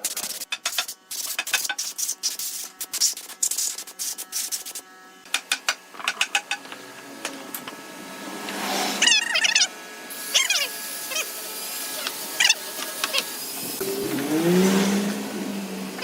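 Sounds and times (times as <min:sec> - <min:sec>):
rubbing and scraping strokes: 0:00.0 - 0:04.8.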